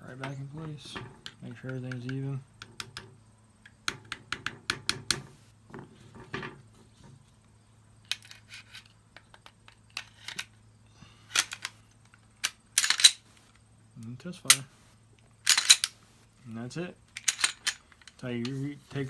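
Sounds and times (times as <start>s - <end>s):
pistol parts clicking: 1.2s - 5.2s, 8.0s - 10.6s, 11.3s - 13.2s, 15.4s - 16.0s, 17.1s - 18.2s.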